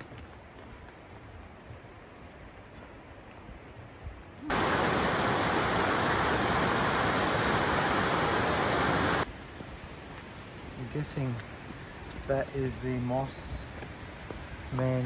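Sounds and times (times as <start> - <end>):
rushing water: 4.4 - 9.3.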